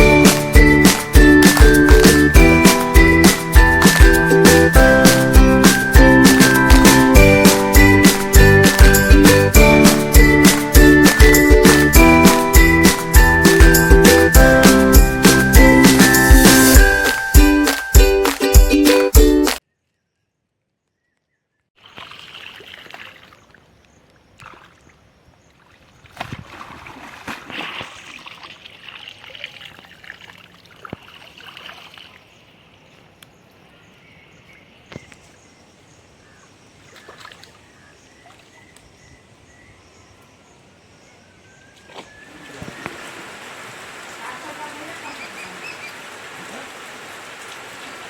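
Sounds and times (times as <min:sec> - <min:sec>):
water splashing and trickling: 0:00.0 - 0:18.3, 0:21.8 - 0:33.7, 0:36.7 - 0:39.0, 0:41.7 - 0:48.0.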